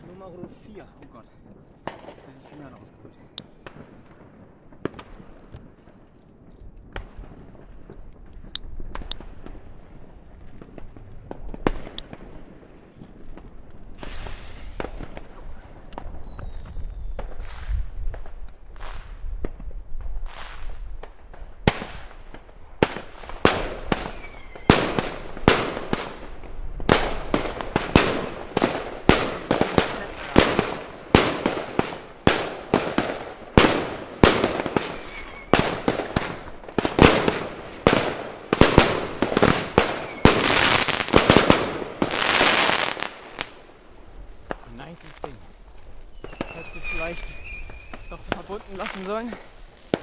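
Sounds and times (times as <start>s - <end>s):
firework bangs: 0.0s - 6.2s, 6.8s - 50.0s
firework crackling: 0.0s - 50.0s
firework whistles: 14.0s - 17.7s, 24.0s - 24.9s, 34.7s - 36.4s, 39.9s - 41.1s, 46.0s - 49.1s.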